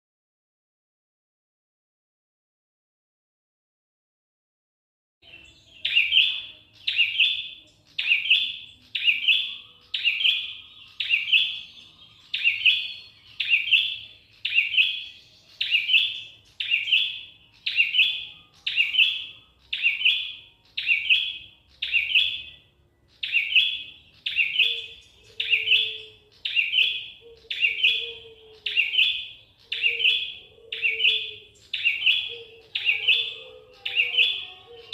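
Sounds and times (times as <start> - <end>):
small bird calling: 5.2 - 34.9.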